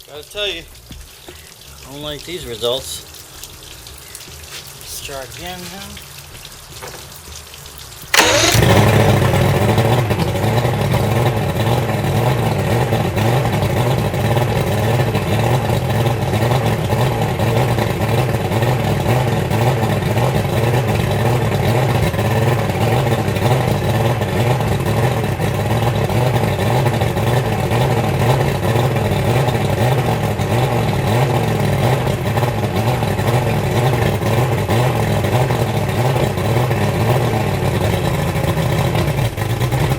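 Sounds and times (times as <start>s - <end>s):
outboard engine running: 8.1s - 39.9s.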